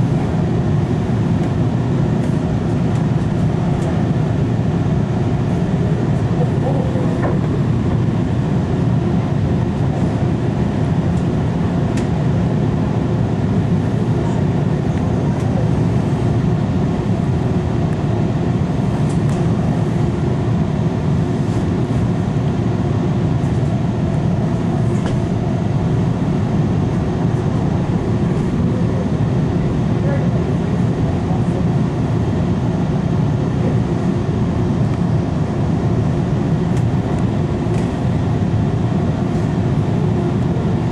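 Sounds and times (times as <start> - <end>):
subway train rumbling: 0.0 - 40.9.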